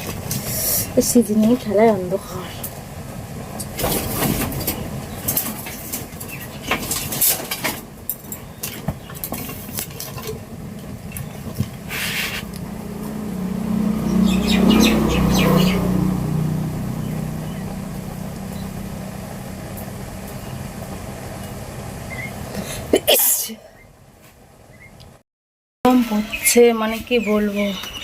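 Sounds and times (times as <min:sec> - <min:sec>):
vehicle engine passing by: 0:11.2 - 0:22.8
short hiss: 0:11.9 - 0:12.4.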